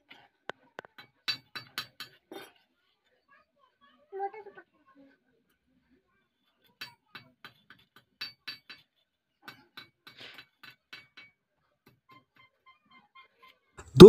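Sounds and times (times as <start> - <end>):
light metal clinks and taps: 0.8 - 2.3, 6.6 - 12.1.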